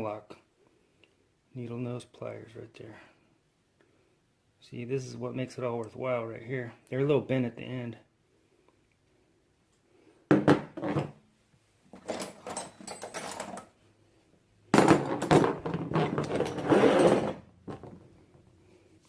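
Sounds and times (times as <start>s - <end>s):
tools scraping: 11.9s - 13.8s, 14.8s - 18.0s
metal hand tools clattering: 12.0s - 13.7s.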